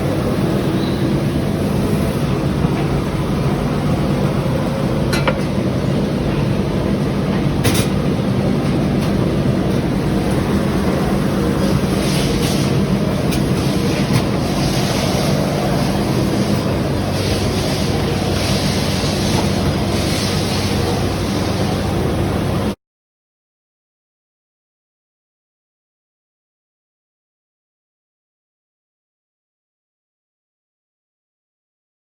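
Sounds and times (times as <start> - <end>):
truck engine and road drone: 0.0 - 18.4.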